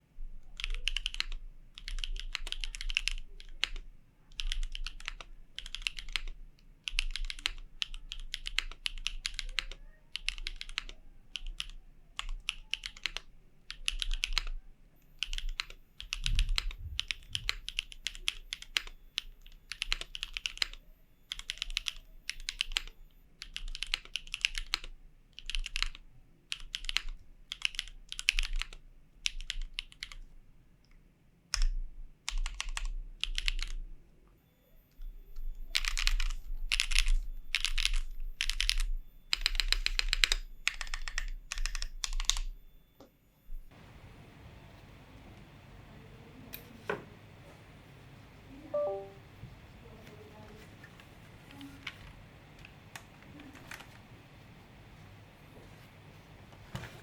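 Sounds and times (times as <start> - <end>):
mechanical keyboard typing: 0.4 - 14.6, 15.2 - 30.2, 31.5 - 33.8, 35.6 - 42.5.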